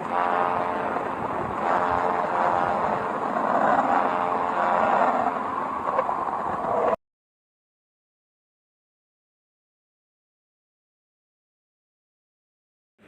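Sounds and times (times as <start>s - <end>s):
eerie rumbling drone: 0.0s - 7.0s.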